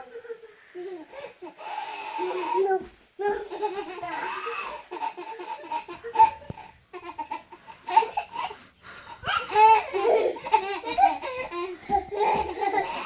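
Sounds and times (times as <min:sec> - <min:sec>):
child laughing: 0:09.2 - 0:13.0.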